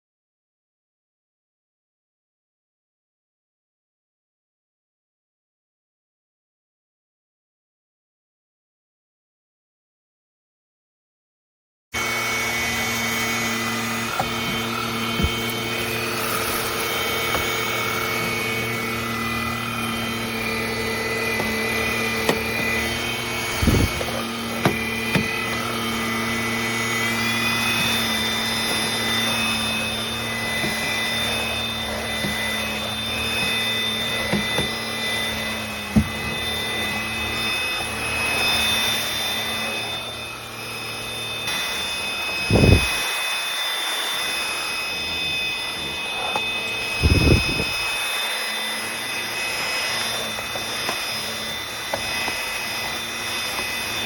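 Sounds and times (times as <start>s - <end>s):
stick vacuum motor whine: 12.0s - 54.0s.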